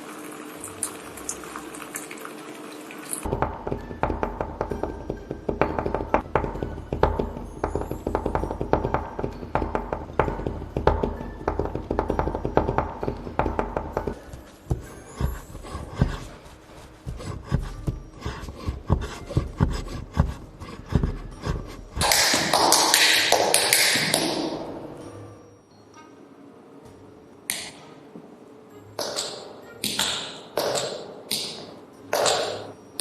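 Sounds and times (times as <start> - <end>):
tapping and knocking on hard objects: 3.3 - 15.4, 29.0 - 32.7
loud hissing rustling noise: 14.3 - 20.6.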